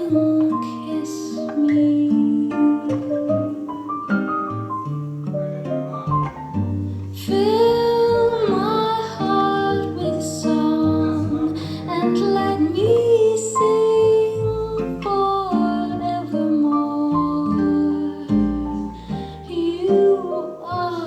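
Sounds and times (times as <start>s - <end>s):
woman singing: 0.0s - 3.9s, 7.1s - 21.0s
guitar accompaniment: 0.0s - 21.0s.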